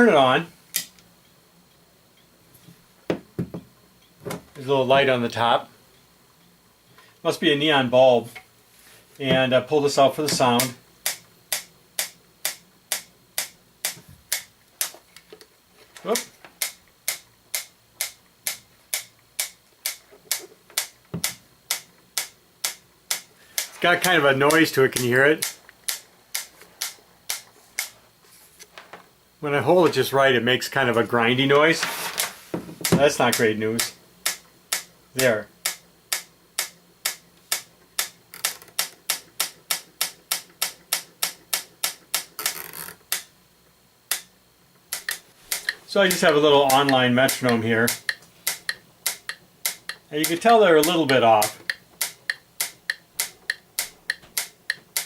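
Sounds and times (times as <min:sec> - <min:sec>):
electric metronome ticking: 0:04.0 - 0:04.2, 0:09.5 - 0:15.0, 0:16.1 - 0:28.0, 0:32.9 - 0:42.5, 0:43.1 - 0:43.3, 0:44.1 - 0:44.3, 0:44.9 - 0:55.0.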